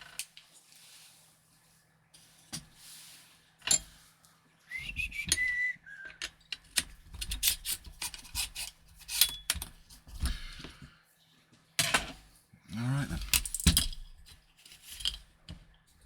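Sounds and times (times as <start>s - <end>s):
whistled notes falling in pitch: 4.7s - 6.2s
rifle parts clicking and knocking: 6.1s - 10.4s, 13.2s - 15.8s.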